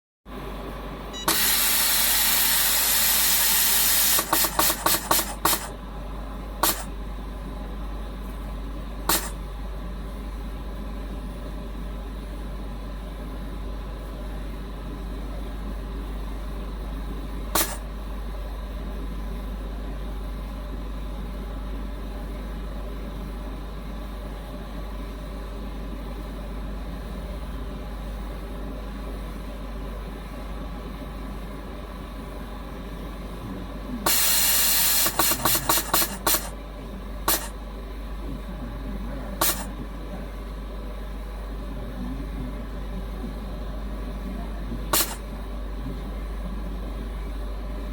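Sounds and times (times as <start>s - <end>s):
machine hum: 0.3s - 47.9s
air hissing: 1.3s - 5.7s, 6.6s - 6.9s, 9.1s - 9.3s, 17.6s - 17.8s, 34.1s - 36.5s, 37.3s - 37.5s, 39.4s - 39.7s, 45.0s - 45.2s
valve air puffs: 1.3s - 5.7s, 6.6s - 6.9s, 9.1s - 9.4s, 17.6s - 17.8s, 34.1s - 36.5s, 37.2s - 37.5s, 39.4s - 39.7s, 45.0s - 45.2s.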